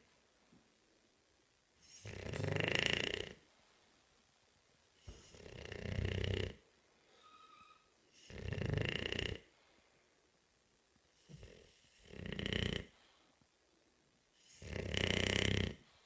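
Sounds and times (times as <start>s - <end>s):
dog snoring: 1.8s - 3.4s, 5.0s - 6.6s, 7.2s - 9.5s, 11.2s - 13.0s, 14.4s - 16.0s
faint whistling tone: 7.1s - 7.9s.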